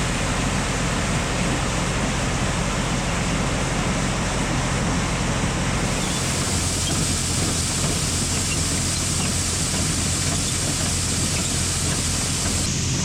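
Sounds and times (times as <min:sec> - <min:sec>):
farm machinery engine drone: 0:00.0 - 0:13.0
constant rushing noise: 0:05.9 - 0:13.0.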